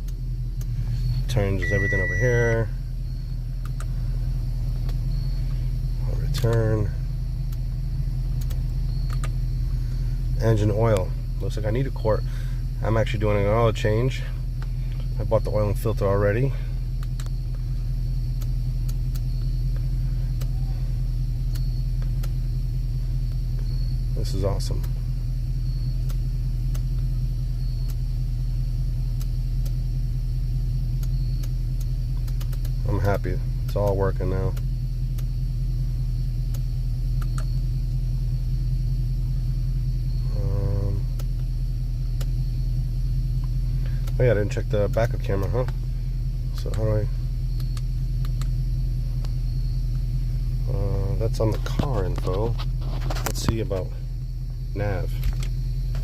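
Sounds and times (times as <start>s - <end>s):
light clicks: 0.0s - 1.2s, 3.6s - 3.9s, 8.3s - 9.4s, 17.0s - 17.6s, 31.0s - 35.3s, 36.5s - 37.6s, 41.1s - 42.4s, 43.3s - 45.9s, 46.5s - 46.9s, 47.5s - 48.6s
car engine idling: 0.0s - 56.0s.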